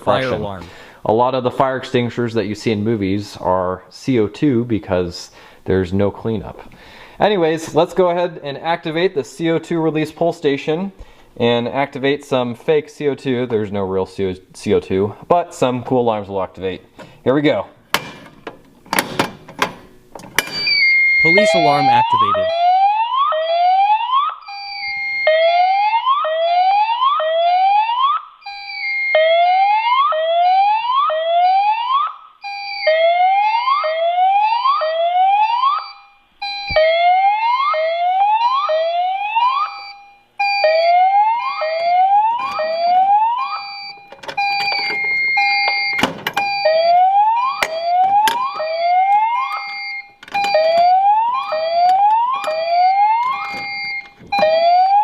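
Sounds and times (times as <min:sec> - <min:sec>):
fire alarm siren whooping: 0:20.6 - 0:55.0.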